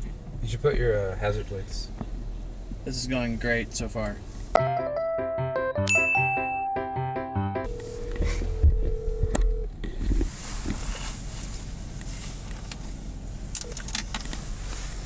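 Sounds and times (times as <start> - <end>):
phone ringback tone: 7.7 - 9.7.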